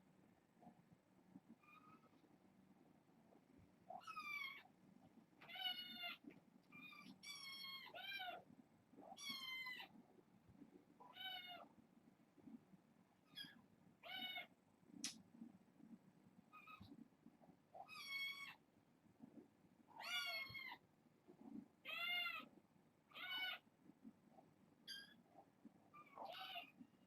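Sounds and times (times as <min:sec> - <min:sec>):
kittens meowing: 0:05.4 - 0:08.4, 0:20.0 - 0:20.8, 0:21.9 - 0:22.5, 0:23.1 - 0:23.6, 0:26.0 - 0:26.8.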